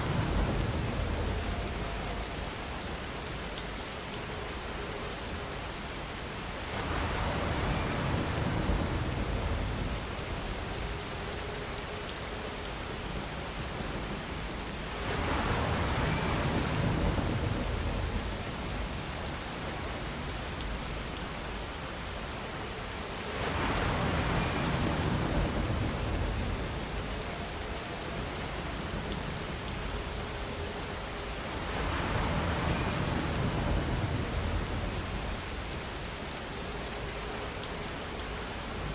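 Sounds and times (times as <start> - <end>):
steady rain falling: 0.0 - 38.9.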